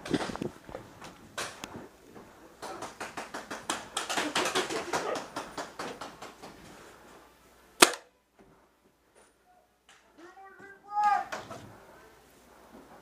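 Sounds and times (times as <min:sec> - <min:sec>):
loud sharp crack: 0:07.8 - 0:08.1.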